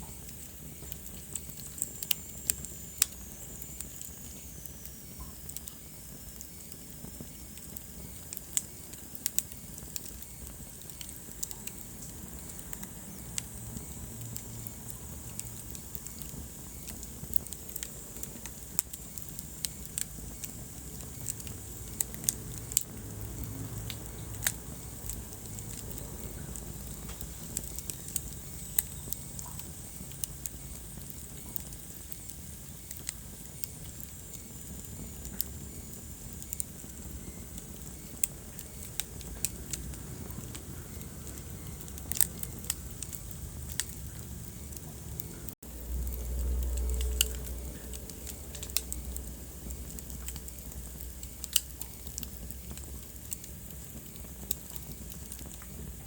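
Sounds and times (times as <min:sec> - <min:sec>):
fire rumbling: 0:00.0 - 0:56.0
logs crackling and popping: 0:00.0 - 0:56.0.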